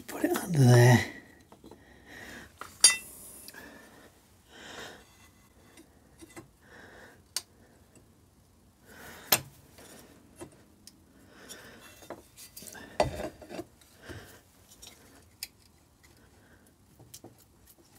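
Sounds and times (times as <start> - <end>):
metal tool clinking and scraping: 2.7 - 3.2, 5.0 - 6.5.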